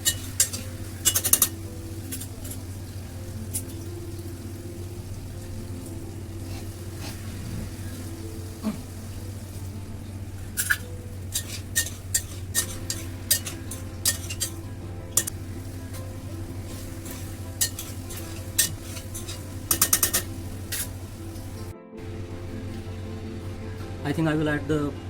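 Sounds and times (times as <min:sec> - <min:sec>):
metal spoon scraping pot: 0:00.0 - 0:02.8, 0:10.4 - 0:15.4, 0:16.0 - 0:21.7
light sizzle: 0:00.0 - 0:25.0
steady low hum: 0:00.0 - 0:25.0.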